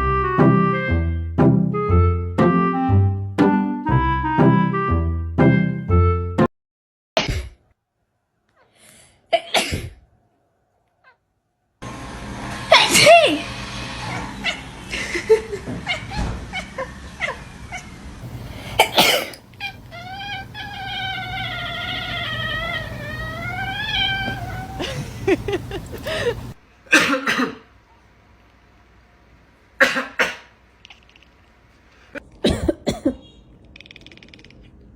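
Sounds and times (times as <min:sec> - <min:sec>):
person coughing: 0:09.4 - 0:10.0, 0:18.3 - 0:19.4, 0:24.8 - 0:27.6, 0:29.8 - 0:30.5, 0:32.4 - 0:33.3
cat meowing: 0:18.3 - 0:26.6.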